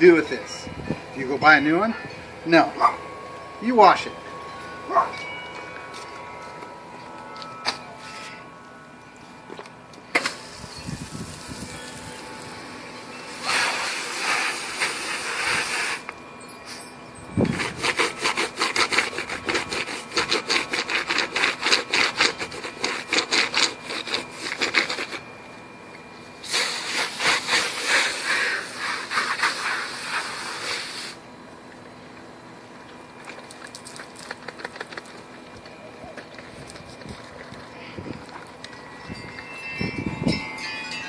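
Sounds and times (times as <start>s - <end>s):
brush scrubbing keyboard: 17.6s - 25.2s.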